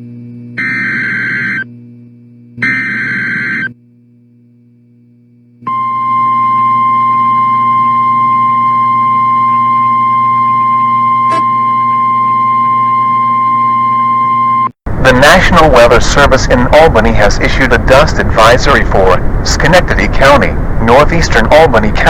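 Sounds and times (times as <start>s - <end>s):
low hum: 0.0s - 22.0s
buzzy digital data screech: 0.6s - 1.7s, 2.6s - 3.8s
steady single-pitch alert tone: 0.6s - 1.7s, 2.6s - 3.8s, 5.7s - 14.7s.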